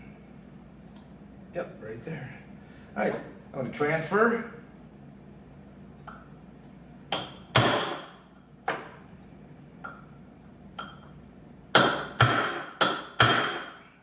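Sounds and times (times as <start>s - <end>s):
hammer striking center punch on steel: 7.1s - 8.2s, 11.7s - 13.8s.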